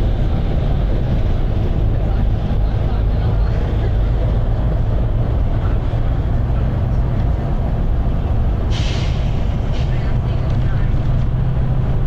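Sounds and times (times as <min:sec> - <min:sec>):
bus diesel engine rumble: 0:00.0 - 0:12.0
air brake hiss: 0:08.7 - 0:10.0.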